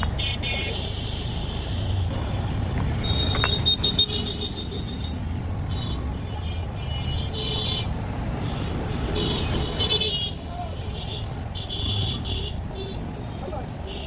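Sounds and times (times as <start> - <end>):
road traffic rumble: 0.0 - 14.0.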